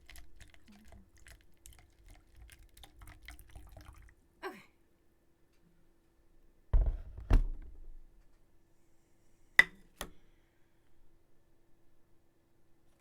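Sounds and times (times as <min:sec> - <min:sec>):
dull knocks on table: 0:06.8 - 0:07.8.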